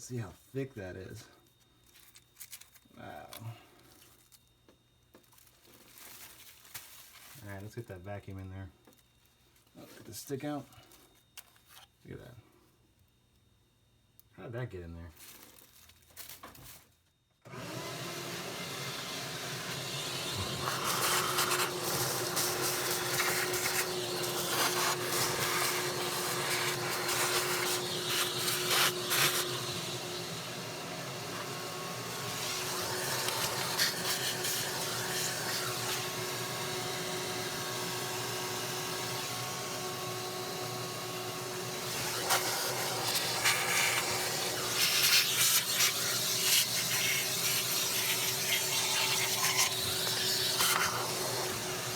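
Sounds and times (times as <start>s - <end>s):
vacuum cleaner motor hum: 17.5s - 51.9s
vacuum nozzle knocking and rattling: 19.7s - 37.9s, 41.0s - 51.9s.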